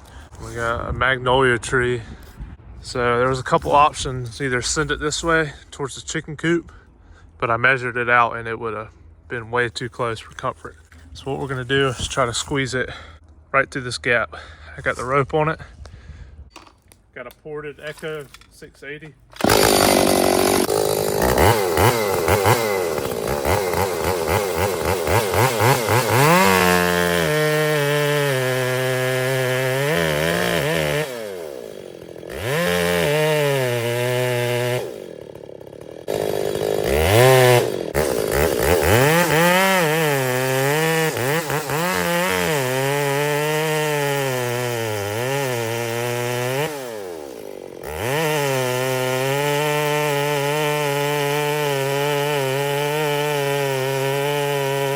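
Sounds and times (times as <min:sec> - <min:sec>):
chainsaw cutting wood: 0:19.3 - 0:54.9.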